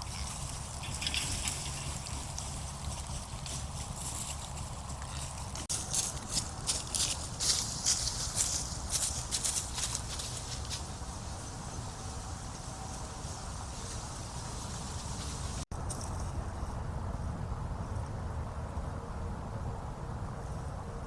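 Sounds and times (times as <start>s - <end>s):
hooves crunching through dry leaves: 0.0s - 16.8s.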